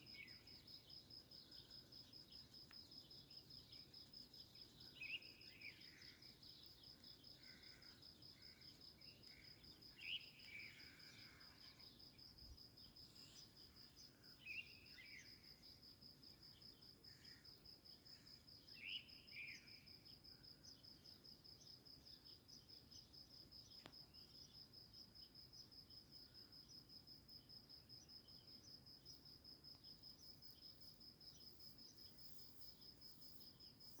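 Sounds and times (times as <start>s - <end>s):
bird chirping: 0.0s - 15.6s.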